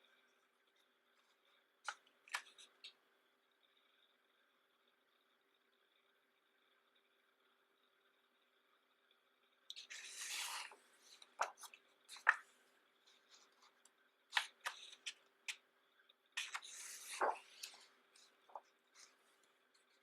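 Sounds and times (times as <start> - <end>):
book pages turning: 1.9 - 2.9, 9.7 - 12.5, 13.1 - 15.6, 16.4 - 20.0
paper taps and rustles: 11.4 - 12.5, 14.3 - 15.6, 16.4 - 17.9.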